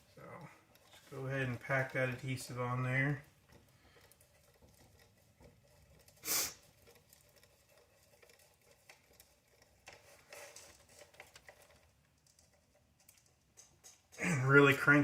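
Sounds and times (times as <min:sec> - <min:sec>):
handling small parts and tools: 0:00.0 - 0:15.0
light clicks and rustles: 0:00.0 - 0:15.0.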